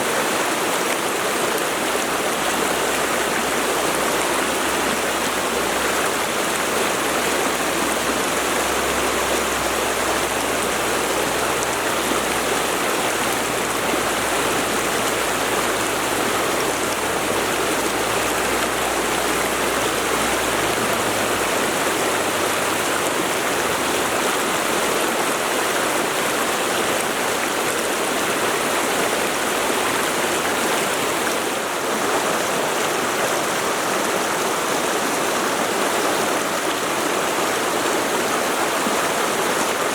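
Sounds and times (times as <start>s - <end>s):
river rushing over rocks: 0.0s - 39.9s.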